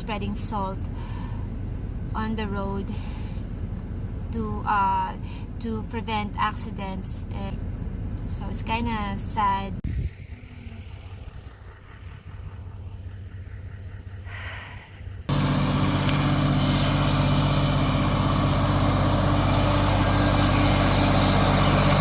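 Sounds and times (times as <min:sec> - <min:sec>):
welder generator engine running: 0:09.9 - 0:22.0.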